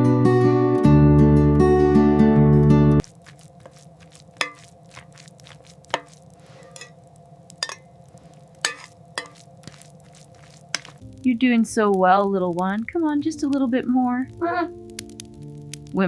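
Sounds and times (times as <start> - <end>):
faint steady hiss: 3.0 - 16.0
sharp clicks and crackles: 11.9 - 16.0.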